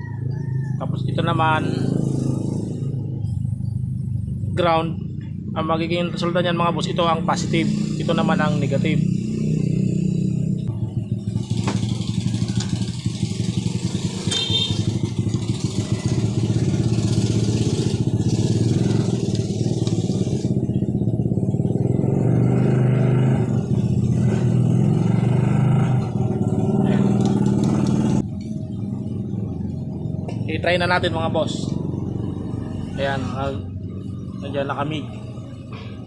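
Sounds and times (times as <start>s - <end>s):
small engine pulsing: 11.2s - 21.0s.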